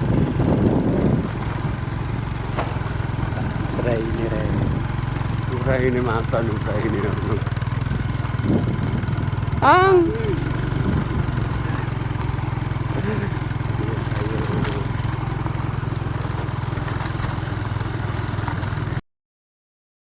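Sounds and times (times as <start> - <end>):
small engine humming: 0.0 - 19.0
faint voices: 1.2 - 15.7.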